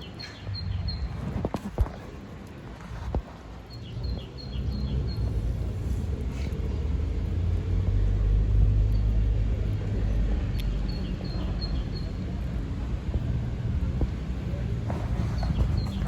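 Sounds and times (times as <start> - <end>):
engine rumbling low: 3.9 - 16.0.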